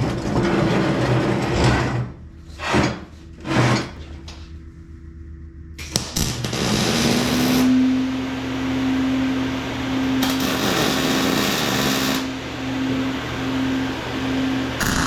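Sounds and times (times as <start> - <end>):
power tool motor whine: 6.4 - 15.0.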